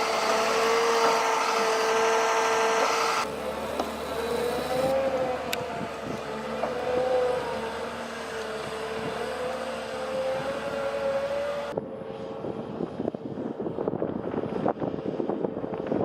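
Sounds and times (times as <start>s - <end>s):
diesel engine droning: 0.0s - 16.0s.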